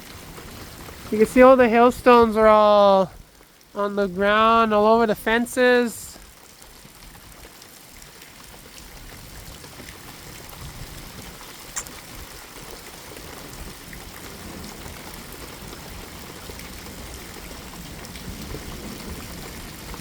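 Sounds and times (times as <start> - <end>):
steady rain: 0.0 - 20.0.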